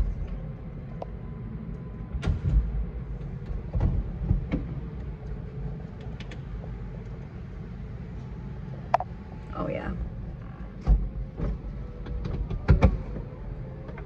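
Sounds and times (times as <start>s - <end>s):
power roof mechanism working: 0.0s - 9.4s, 10.1s - 14.0s
low rumble from car: 0.0s - 14.0s
roof clicks and clunks: 10.7s - 14.0s.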